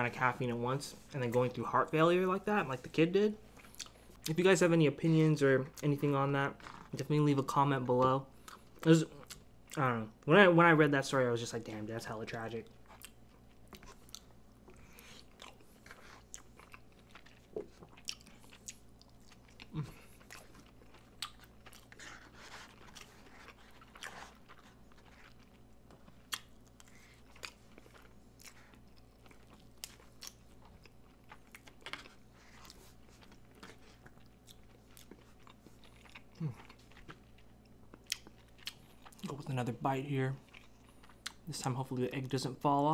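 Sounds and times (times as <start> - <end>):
person chewing food: 3.4 - 4.4, 8.3 - 9.8, 12.6 - 39.3, 40.4 - 41.5.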